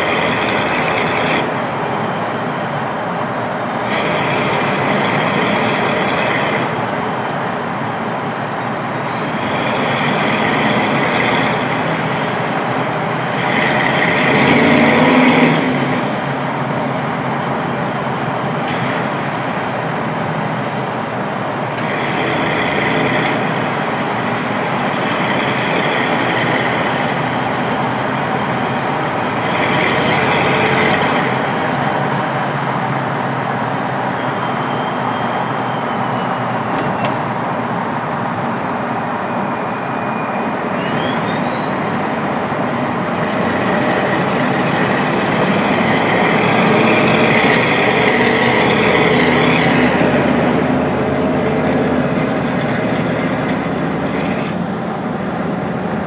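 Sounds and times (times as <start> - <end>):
diesel engine running: 0.0 - 56.0
road noise: 0.0 - 56.0
turbo whistle: 34.0 - 37.9, 38.6 - 50.3.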